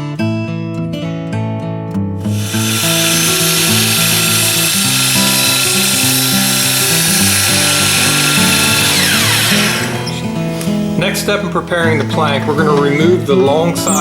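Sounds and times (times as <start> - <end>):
acoustic guitar music: 0.0 - 14.0
power tool motor whining: 2.3 - 11.0.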